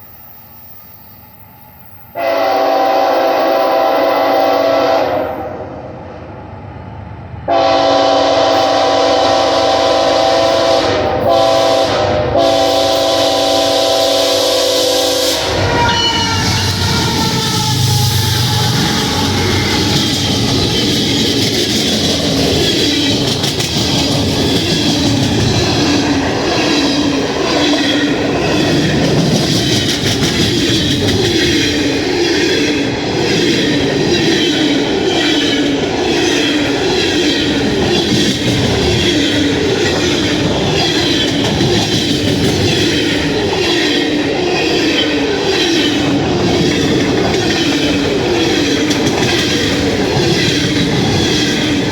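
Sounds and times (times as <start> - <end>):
freight train rumbling by: 0.0 - 51.9
wheels clacking over rail joints: 15.5 - 51.9.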